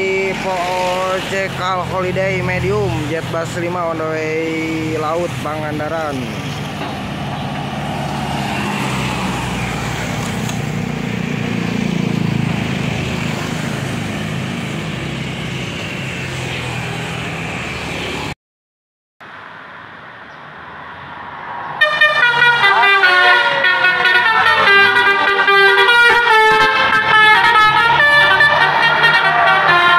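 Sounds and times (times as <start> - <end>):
bus diesel engine running: 0.0 - 17.4
musical horn playing a tune: 21.8 - 29.9.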